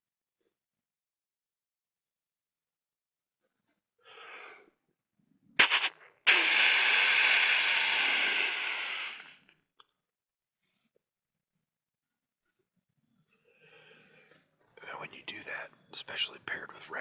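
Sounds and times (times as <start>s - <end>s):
faint breath: 4.0s - 4.8s, 5.6s - 9.4s, 13.5s - 14.5s
mouth-made deer snort-wheeze: 5.6s - 9.4s.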